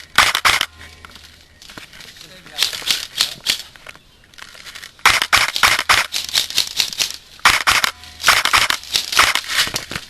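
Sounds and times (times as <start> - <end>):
airsoft guns firing: 0.1 - 0.7, 5.0 - 9.7.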